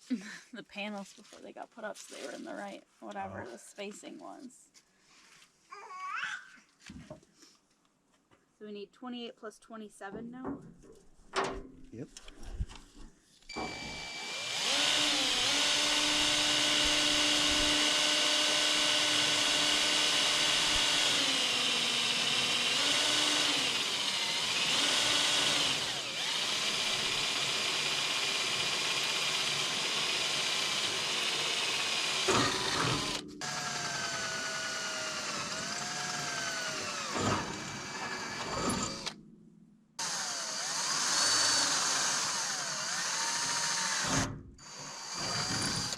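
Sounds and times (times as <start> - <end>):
cordless drill drilling metal: 13.5 - 39.2, 40.0 - 45.9.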